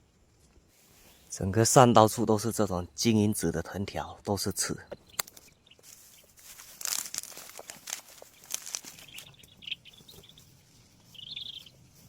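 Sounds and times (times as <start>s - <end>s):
brush rustling and crackling: 0.3s - 1.4s, 5.2s - 12.0s
small bird chirping: 4.6s - 12.0s
footsteps through brush: 5.2s - 12.0s.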